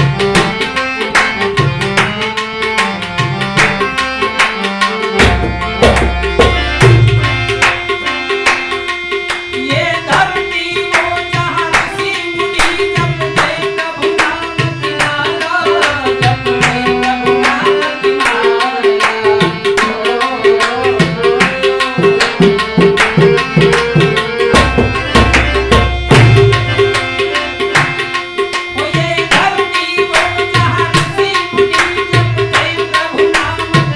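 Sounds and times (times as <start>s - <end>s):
harmonium melody: 0.0s - 33.9s
tabla rhythm: 0.0s - 33.9s.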